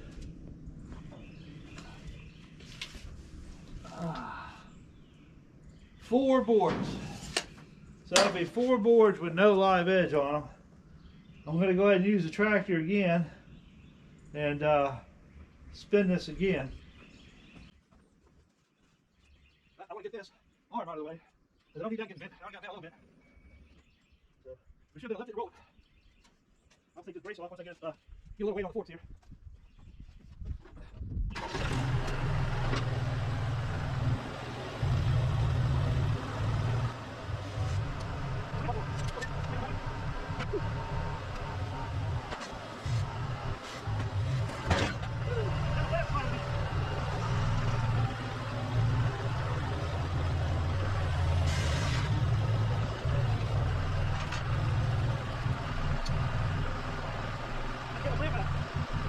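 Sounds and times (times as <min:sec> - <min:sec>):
tractor engine running: 0:31.3 - 0:59.0.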